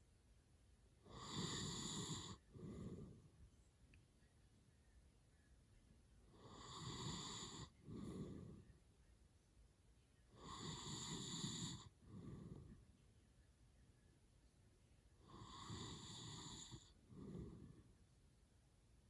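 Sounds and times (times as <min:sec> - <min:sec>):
man snoring: 0:01.1 - 0:03.1, 0:06.4 - 0:08.6, 0:10.4 - 0:12.6, 0:15.3 - 0:17.7.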